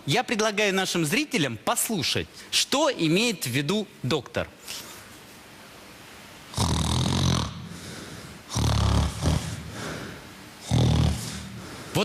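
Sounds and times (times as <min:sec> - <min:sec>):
person snoring: 0:06.5 - 0:10.0, 0:10.6 - 0:11.6.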